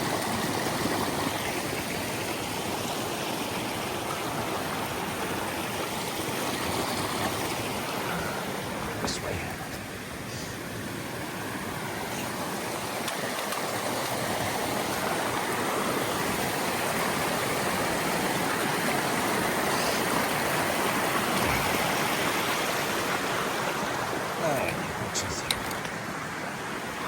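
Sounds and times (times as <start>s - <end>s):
creek water rushing: 0.0s - 27.0s.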